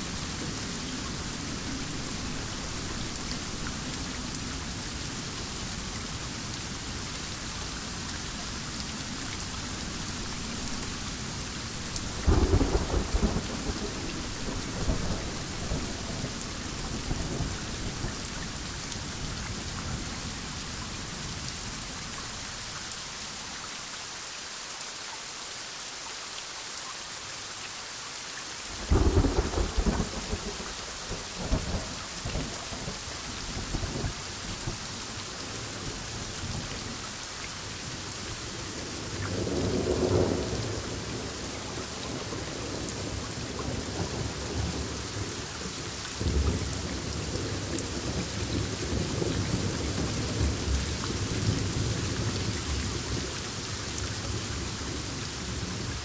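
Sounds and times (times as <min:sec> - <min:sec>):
heavy rain: 0:00.0 - 0:56.0
thunder cracks: 0:12.2 - 0:16.4, 0:29.0 - 0:30.6.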